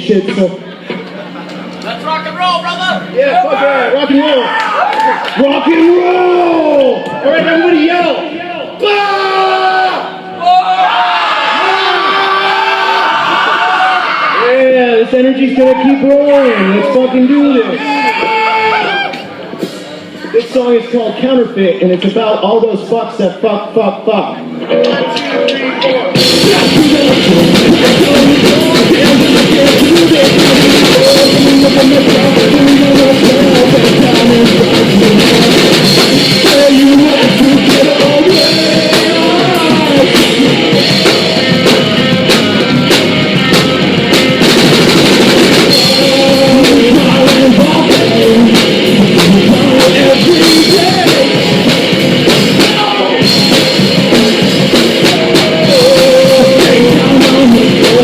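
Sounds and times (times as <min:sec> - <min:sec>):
bass guitar: 0:00.0 - 0:09.0, 0:24.0 - 0:58.0
shouted vocals: 0:02.6 - 0:14.7, 0:15.6 - 0:19.3, 0:36.6 - 0:41.5, 0:52.6 - 0:53.3
distorted electric guitar: 0:24.3 - 0:58.0
pounding drum kit: 0:24.6 - 0:58.0.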